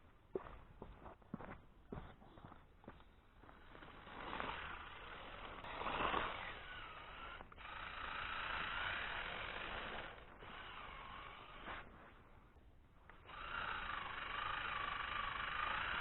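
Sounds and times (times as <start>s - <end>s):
electric motor and gearbox whining: 3.4s - 12.2s, 13.0s - 16.0s.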